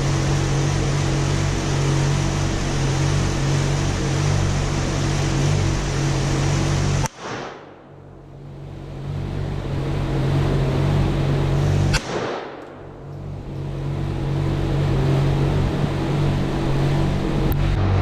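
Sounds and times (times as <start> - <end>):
vehicle humming: 0.0 - 18.0
sharp click: 11.9 - 12.8.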